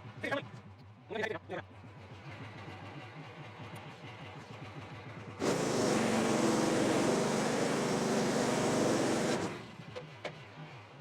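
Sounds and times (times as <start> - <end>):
loud sawing noise: 5.4 - 9.6
sawmill engine: 5.4 - 9.8.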